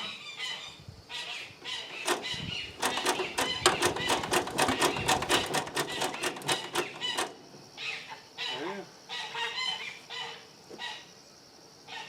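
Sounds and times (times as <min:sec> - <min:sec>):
engine cranked by hand clattering: 0:01.9 - 0:07.6.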